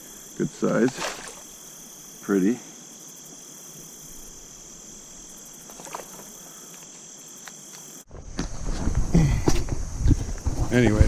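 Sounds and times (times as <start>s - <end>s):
faint stream hiss: 0.0s - 8.0s
insects trilling: 0.0s - 11.0s
rustling: 5.2s - 7.1s.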